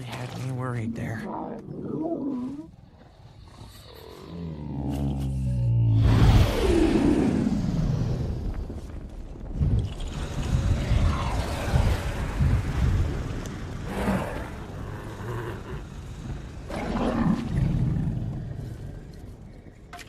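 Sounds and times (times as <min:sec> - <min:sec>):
dragon roars and growls: 0:10.2 - 0:13.2, 0:13.8 - 0:18.6.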